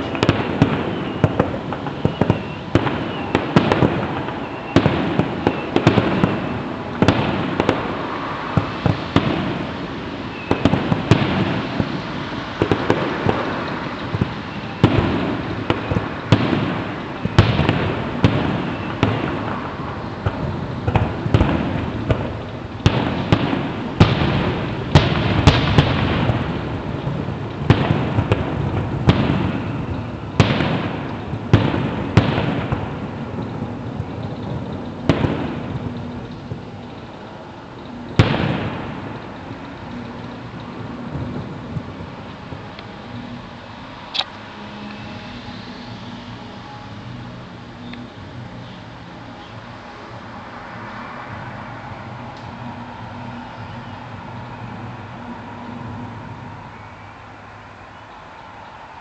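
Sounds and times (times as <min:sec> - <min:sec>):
distant fireworks barrage: 0:00.0 - 0:59.0.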